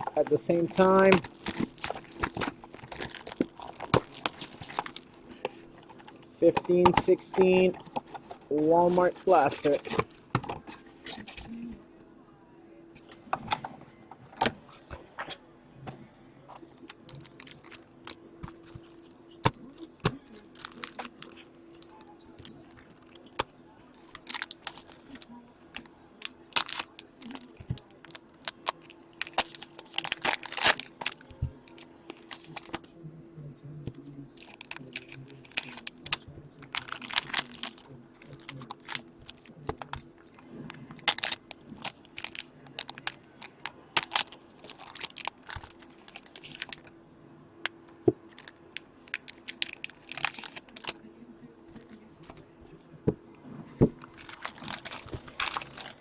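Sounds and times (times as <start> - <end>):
wrappers tearing and crinkling: 0.0 - 5.4, 8.9 - 10.2, 16.8 - 19.0, 20.3 - 21.5, 24.0 - 32.8, 34.4 - 40.0, 41.0 - 46.9, 48.3 - 51.0, 54.0 - 56.0.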